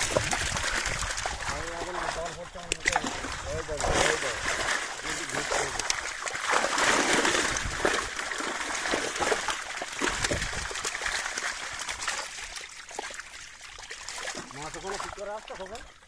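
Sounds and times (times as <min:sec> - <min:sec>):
water splashing and trickling: 0:00.0 - 0:16.0.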